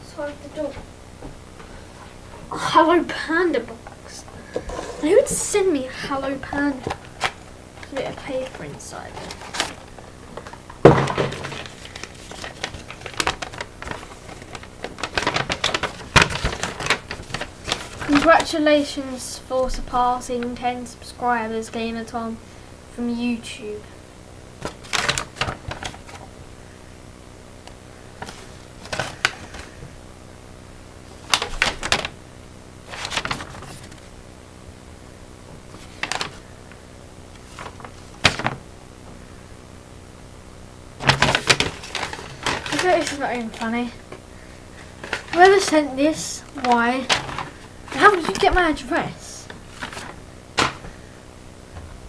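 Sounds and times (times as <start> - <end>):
paper and cardboard rustling: 0.2 - 19.1, 24.6 - 26.4, 28.1 - 29.9, 31.1 - 32.2, 32.8 - 34.2, 35.4 - 39.2, 41.0 - 51.1
knock on cardboard box: 10.8 - 11.5.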